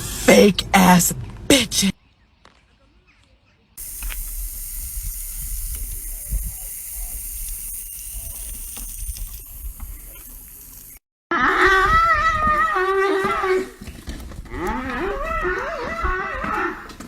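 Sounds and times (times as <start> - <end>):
steady hissing: 3.8 - 11.0
cow mooing: 14.5 - 16.9.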